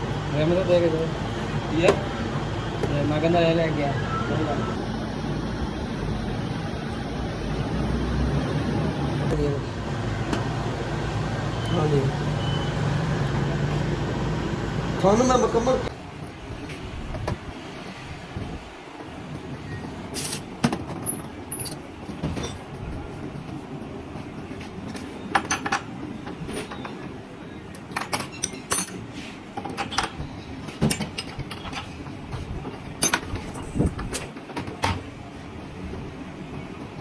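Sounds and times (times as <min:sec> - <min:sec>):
metal tools clinking: 0:21.0 - 0:21.8, 0:28.0 - 0:29.0.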